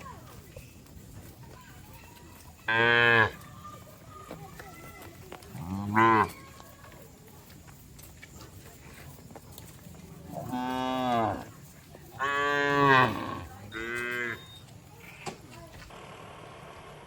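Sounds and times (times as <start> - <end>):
cattle mooing: 5.6 - 6.3, 10.4 - 11.5, 12.2 - 14.4.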